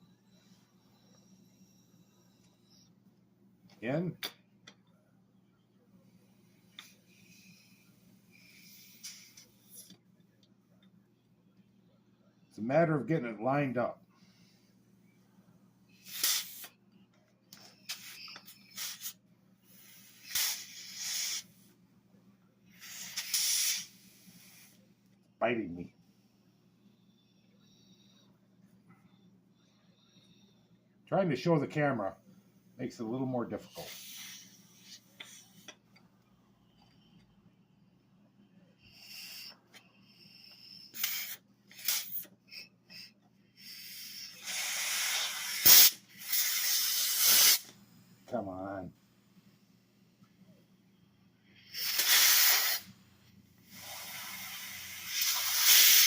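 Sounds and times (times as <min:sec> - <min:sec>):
compressed air hissing from blow gun: 0:06.8 - 0:09.9, 0:16.0 - 0:16.8, 0:17.8 - 0:21.6, 0:22.7 - 0:24.8, 0:33.6 - 0:35.6, 0:38.9 - 0:47.7, 0:51.6 - 0:52.9, 0:53.6 - 0:56.0.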